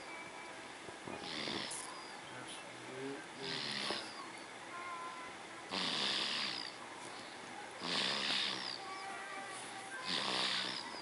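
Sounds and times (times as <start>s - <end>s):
pet snoring loudly: 1.2s - 1.9s, 3.4s - 4.2s, 5.7s - 6.8s, 7.8s - 8.8s, 10.0s - 11.0s.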